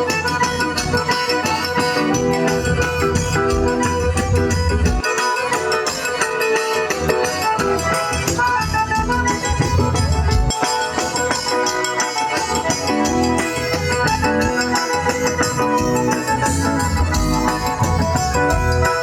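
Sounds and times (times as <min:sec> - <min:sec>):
accordion melody: 0:00.0 - 0:19.0
quick percussion beat: 0:00.0 - 0:19.0.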